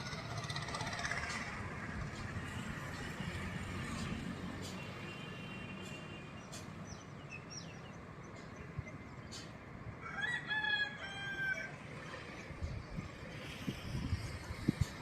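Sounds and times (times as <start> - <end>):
rooster crowing: 10.0 - 11.8.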